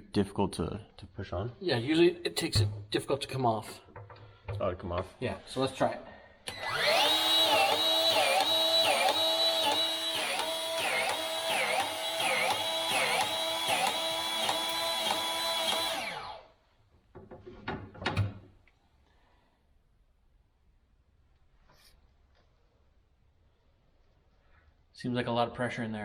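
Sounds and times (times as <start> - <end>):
grease gun motor running: 6.5 - 16.4.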